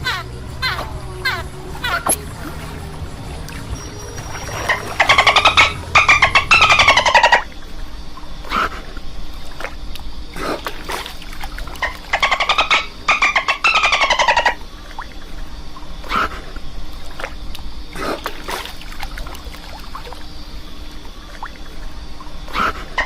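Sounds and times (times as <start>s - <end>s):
dolphin pulsed squawks: 0.0s - 7.6s, 11.8s - 14.6s.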